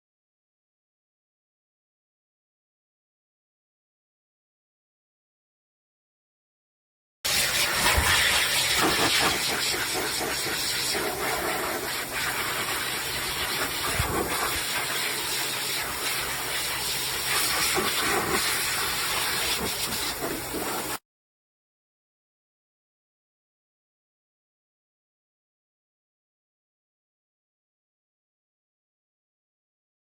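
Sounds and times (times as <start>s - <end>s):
pet dryer air blast hissing: 7.3s - 21.0s.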